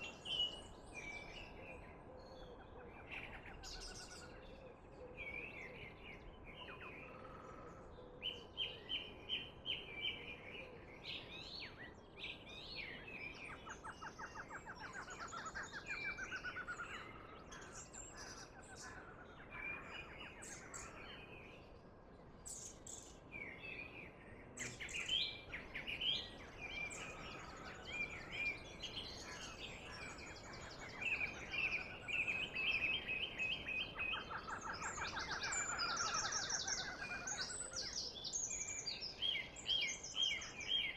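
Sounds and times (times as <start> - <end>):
birds chirping and trilling: 24.6 - 40.9.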